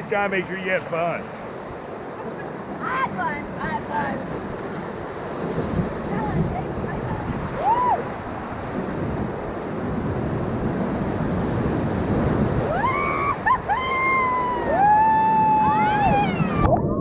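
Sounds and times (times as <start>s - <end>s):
river rapids rushing: 0.0s - 16.8s
people whooping: 7.5s - 8.1s, 12.6s - 17.0s.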